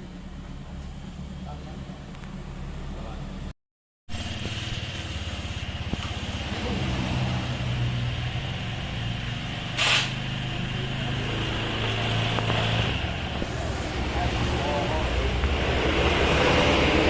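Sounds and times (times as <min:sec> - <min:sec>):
small motorcycle engine running: 0:04.1 - 0:07.0
short hiss: 0:09.8 - 0:10.2.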